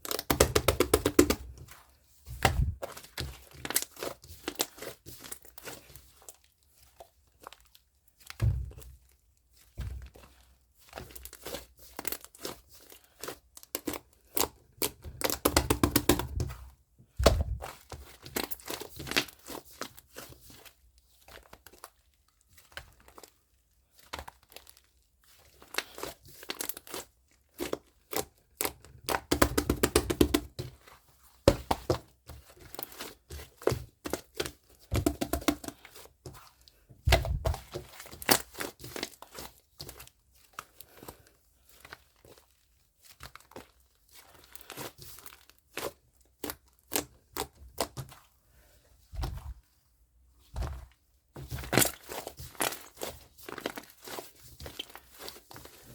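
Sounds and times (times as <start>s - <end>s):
slime crackling and popping: 0.0s - 1.6s
soft thuds: 17.2s - 17.7s.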